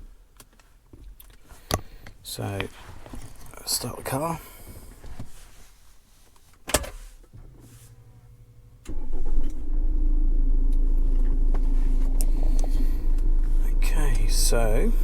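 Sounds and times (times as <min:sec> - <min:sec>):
car engine starting and idling: 0:07.9 - 0:15.0
ignition click: 0:08.8 - 0:15.0.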